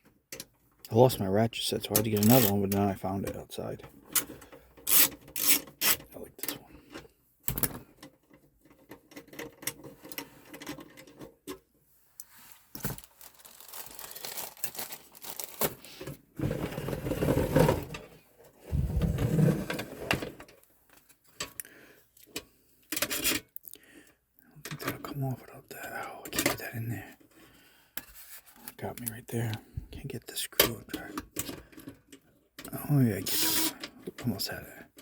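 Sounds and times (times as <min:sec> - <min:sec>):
hand ratchet clicking: 0:04.8 - 0:06.0.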